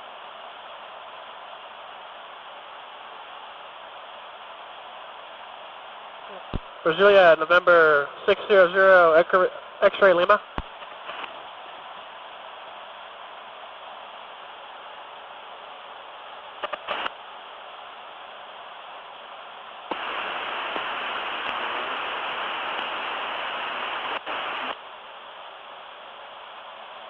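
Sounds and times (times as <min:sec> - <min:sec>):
recorder hiss: 0:00.0 - 0:27.0
burst of radio static: 0:16.6 - 0:17.2, 0:19.9 - 0:24.8.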